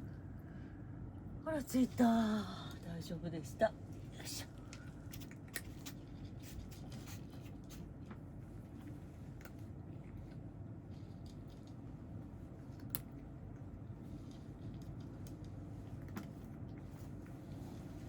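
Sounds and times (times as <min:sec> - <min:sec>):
faint small clicks and scratches: 0:04.6 - 0:18.0.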